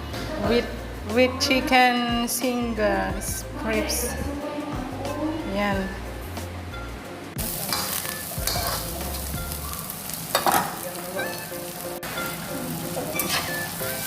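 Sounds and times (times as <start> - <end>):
food sizzling in a frying pan: 7.4 - 14.0
spatula clattering against pan: 10.3 - 11.4.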